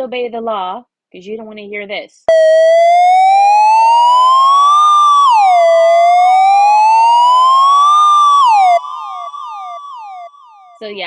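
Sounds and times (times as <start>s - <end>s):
synthesizer siren wail: 2.3s - 10.8s.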